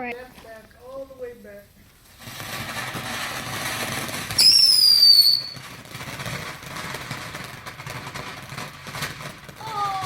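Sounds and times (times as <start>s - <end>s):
firework hissing: 2.0s - 10.0s
high firework whistle: 4.3s - 5.8s.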